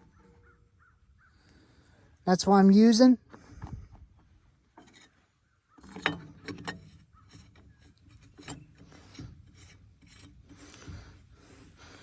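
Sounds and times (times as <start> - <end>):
parts rubbing: 3.4 - 12.0
hard parts clicking and knocking: 4.6 - 11.8.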